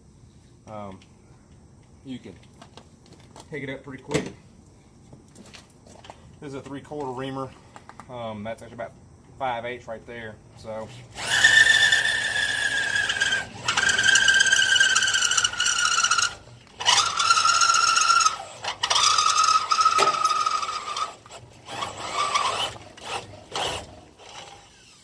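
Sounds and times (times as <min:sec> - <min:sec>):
electric drill cutting steel: 0:10.9 - 0:25.0.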